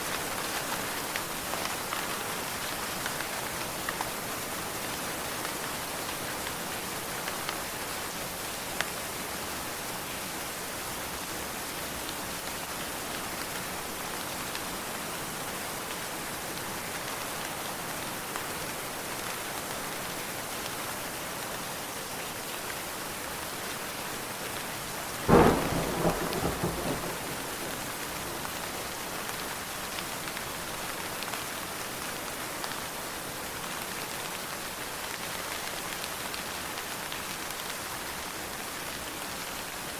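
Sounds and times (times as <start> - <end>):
heavy rain: 0.0 - 39.9
thunder crack: 25.3 - 28.8.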